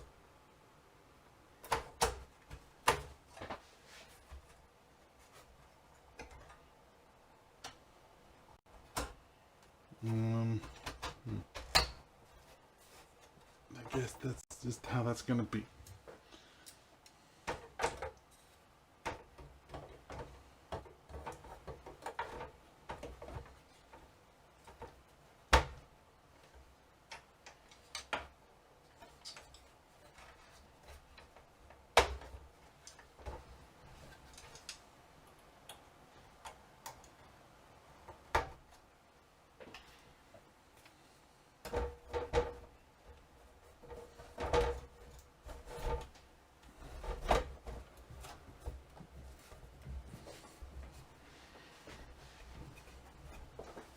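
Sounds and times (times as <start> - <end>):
computer parts clicking and knocking: 1.6 - 3.6, 19.0 - 25.8, 41.6 - 42.8, 43.6 - 46.2.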